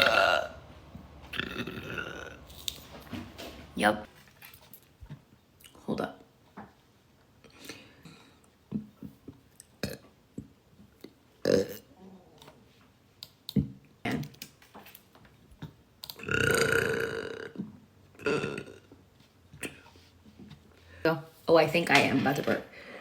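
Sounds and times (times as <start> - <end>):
woman burping: 0.0 - 0.6, 1.3 - 2.4, 11.4 - 12.3, 16.2 - 18.9.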